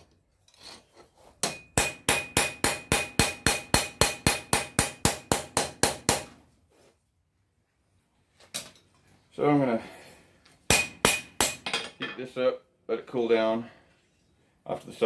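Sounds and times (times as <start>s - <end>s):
anvil ringing: 1.4s - 5.7s
hammer striking metal on anvil: 1.4s - 6.4s, 10.7s - 12.0s.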